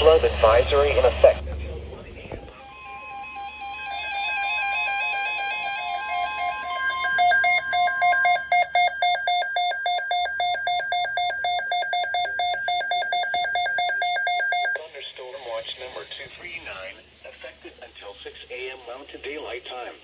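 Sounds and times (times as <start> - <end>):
steady electronic tone: 0.0 - 19.6
rapid pulsing electronic beep: 3.8 - 19.6.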